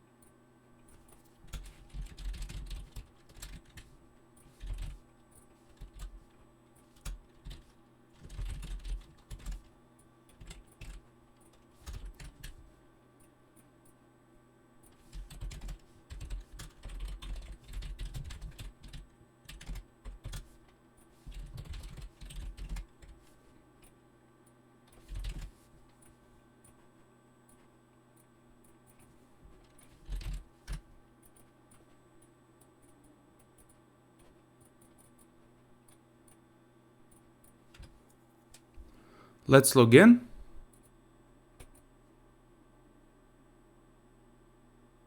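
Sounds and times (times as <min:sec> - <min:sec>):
computer keyboard typing: 0:00.9 - 0:09.7, 0:10.3 - 0:12.6, 0:14.9 - 0:20.6, 0:21.2 - 0:23.2, 0:24.9 - 0:25.6, 0:29.6 - 0:30.8.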